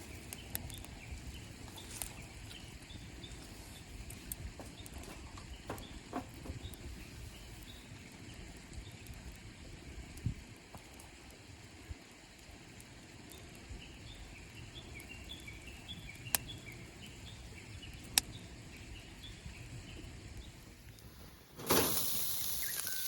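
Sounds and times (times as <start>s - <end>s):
small clicks and knocks: 4.0s - 6.9s.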